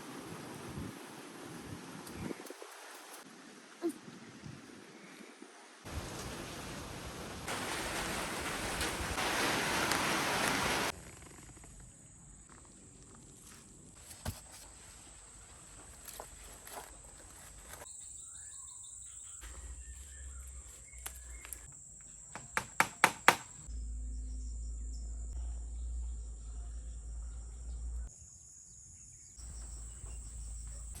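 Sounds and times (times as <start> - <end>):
insects droning: 9.2 - 31.0.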